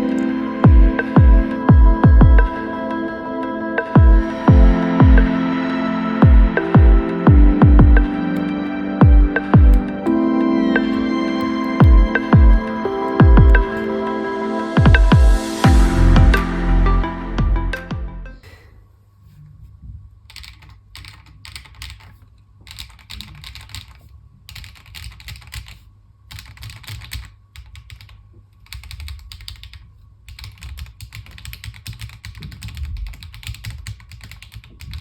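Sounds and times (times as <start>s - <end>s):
mechanical keyboard typing: 20.3s - 35.0s.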